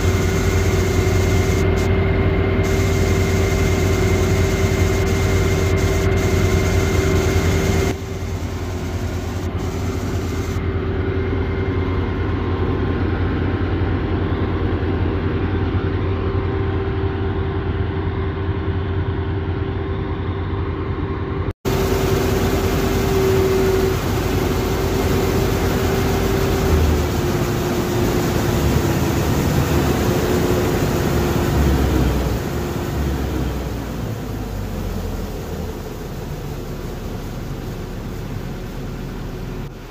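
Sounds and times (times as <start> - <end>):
combine harvester running: 0.0 - 39.9.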